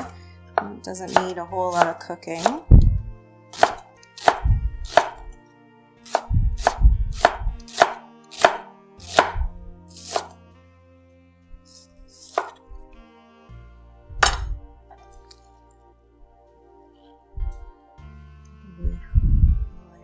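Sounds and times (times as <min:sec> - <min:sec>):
knife chopping onion on board: 0:01.1 - 0:02.8, 0:03.6 - 0:05.3, 0:06.1 - 0:10.3, 0:11.7 - 0:12.6.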